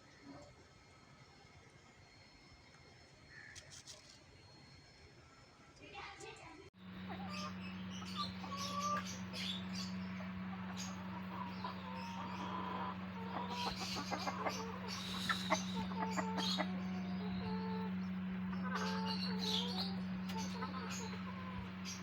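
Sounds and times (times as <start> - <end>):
bird calls and chirps: 6.8 - 22.0
chickens clucking: 6.8 - 22.0
steady low hum: 6.8 - 22.0.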